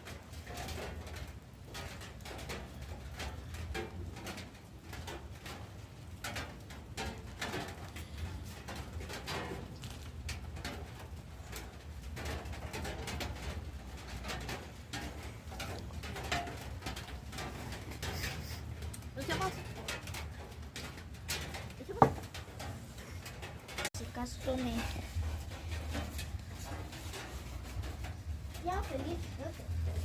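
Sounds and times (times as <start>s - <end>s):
campfire crackling: 0.0s - 30.0s
steady low rumble: 22.6s - 30.0s.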